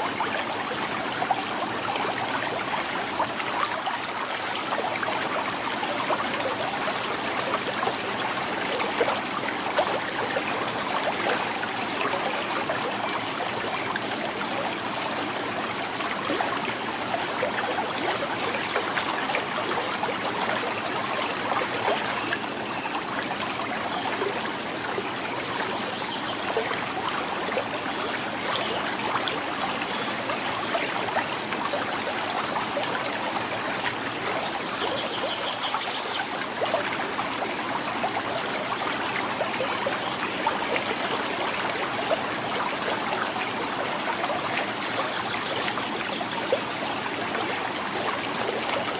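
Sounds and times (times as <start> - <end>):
small river gurgling: 0.0 - 48.9.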